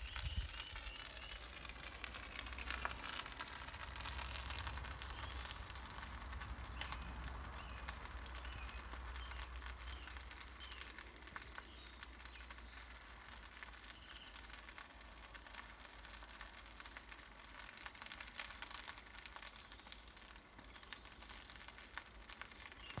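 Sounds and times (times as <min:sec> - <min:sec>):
bonfire crackling: 0:00.0 - 0:23.0
low rumble: 0:01.4 - 0:11.6.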